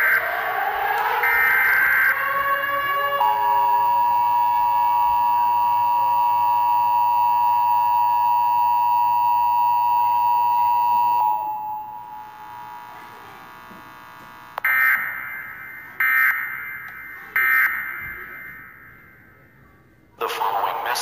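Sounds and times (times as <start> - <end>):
screeching digital data tones: 0.0 - 12.9
two-tone electronic alarm: 0.0 - 19.4.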